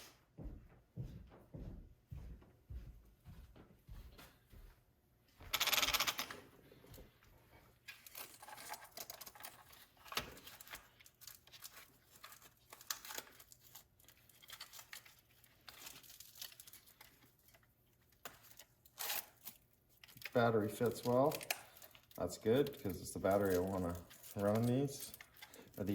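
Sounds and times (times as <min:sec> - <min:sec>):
clicks and rustles of handling: 0:05.5 - 0:25.9.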